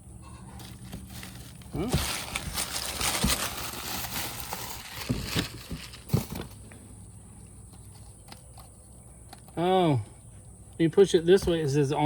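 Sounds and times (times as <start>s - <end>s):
wrapping material crinkling: 0.6s - 6.4s.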